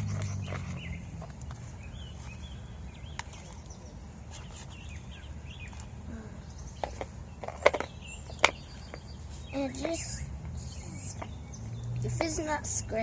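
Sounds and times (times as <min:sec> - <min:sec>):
low outdoor rumble: 0:00.0 - 0:13.0
small birds chirping: 0:00.0 - 0:13.0.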